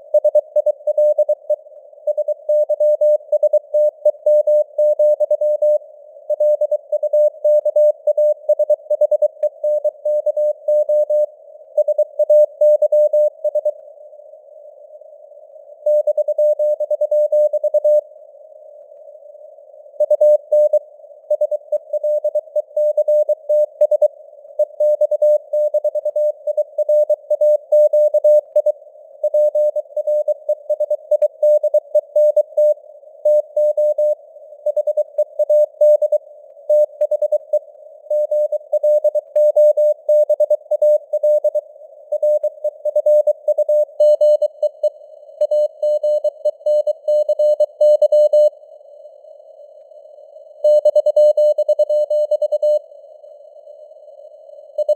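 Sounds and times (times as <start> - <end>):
faint radio hiss: 11.2 - 11.8, 13.3 - 15.9, 17.5 - 22.8, 28.6 - 30.7, 32.7 - 38.8
morse code beeps: 42.2 - 48.5, 50.6 - 52.8.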